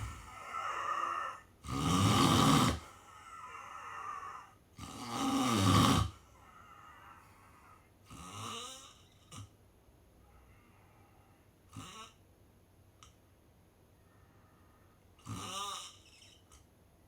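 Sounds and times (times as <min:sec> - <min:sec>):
soft breathing: 0:00.0 - 0:01.4, 0:10.2 - 0:11.5, 0:13.9 - 0:15.1
person snoring: 0:00.0 - 0:09.0, 0:15.3 - 0:16.0.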